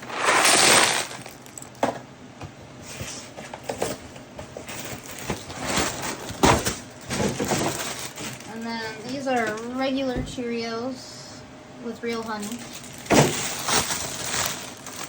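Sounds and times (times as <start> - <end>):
dry pasta pouring rattle: 0.0 - 1.8, 12.6 - 15.0
packaging rustling: 0.0 - 1.8, 4.6 - 9.7, 12.1 - 15.0.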